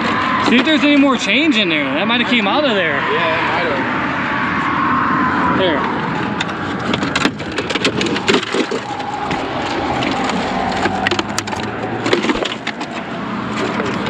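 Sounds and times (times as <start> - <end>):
clattering knocks and cracks: 6.3 - 14.0.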